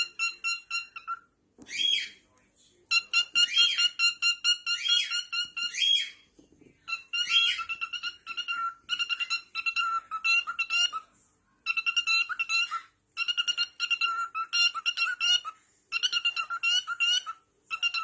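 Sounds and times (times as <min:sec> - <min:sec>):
parrot mimicking beeping ringtone: 0:00.0 - 0:01.2.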